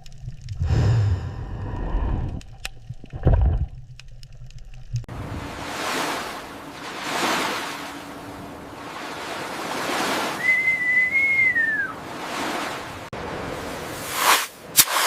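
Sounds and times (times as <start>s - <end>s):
sea waves washing: 0.0s - 4.1s, 4.9s - 15.0s
whistle-like tone: 10.4s - 11.9s.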